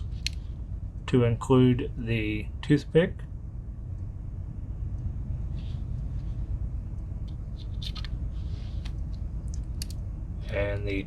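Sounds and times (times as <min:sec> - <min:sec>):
low room hum: 0:00.0 - 0:11.0
small clicks and light scrapes: 0:07.3 - 0:10.0.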